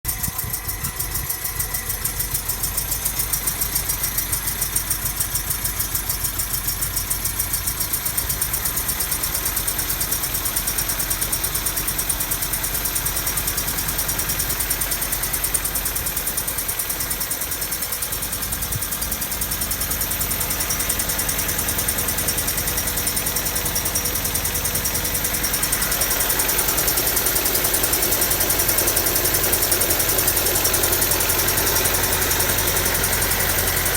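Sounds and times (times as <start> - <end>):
car engine idling roughly: 0.0 - 33.9.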